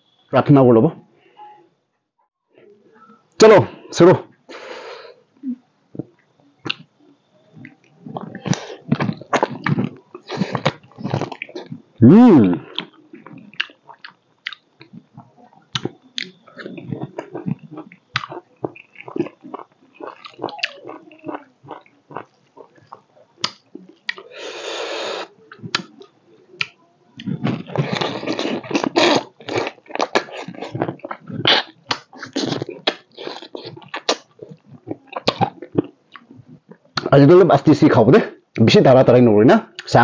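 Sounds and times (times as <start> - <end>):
wet chewing and biting: 6.6 - 6.9, 7.6 - 11.9, 12.7 - 24.4, 25.5 - 37.1.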